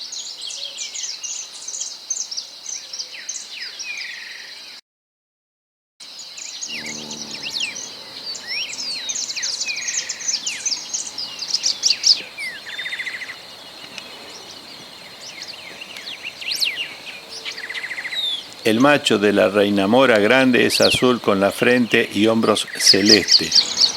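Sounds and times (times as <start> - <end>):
birds chirping and trilling: 0.0 - 4.8, 6.0 - 23.9
high insect drone: 6.0 - 23.9
short low pitched call: 6.7 - 9.2.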